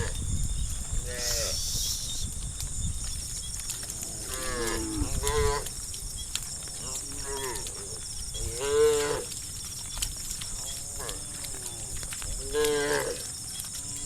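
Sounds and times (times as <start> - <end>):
cows mooing: 4.1 - 5.7, 6.8 - 9.4, 10.6 - 14.0.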